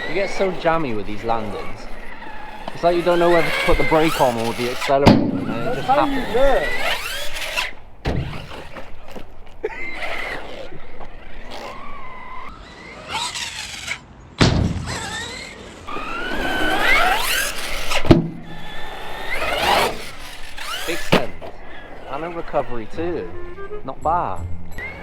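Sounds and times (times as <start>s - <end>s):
electric motor whining: 0.0s - 14.2s, 14.8s - 25.0s
toy truck landing thud: 1.5s - 9.4s, 13.1s - 21.6s.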